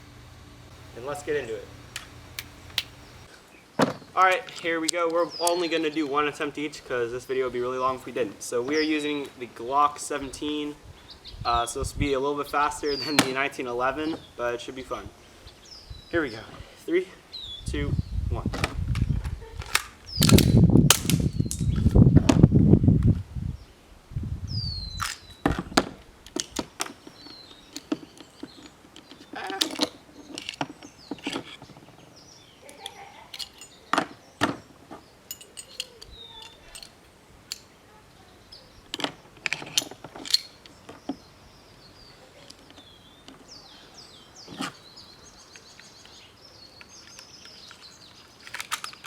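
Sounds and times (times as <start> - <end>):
birds chirping: 0.0 - 20.6, 21.2 - 22.2, 24.5 - 49.0
pistol parts clicking and clacking: 4.3 - 5.7, 18.9 - 21.7, 25.0 - 25.3, 26.3 - 31.6, 32.7 - 34.0, 35.3 - 37.7, 38.9 - 40.8, 45.5 - 49.0.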